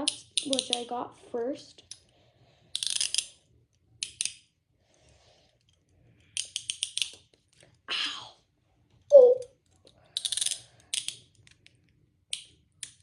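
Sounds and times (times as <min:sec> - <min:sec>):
handcuffs ratcheting clicks: 0:02.7 - 0:03.4, 0:04.0 - 0:04.4, 0:05.6 - 0:07.3, 0:09.8 - 0:13.0.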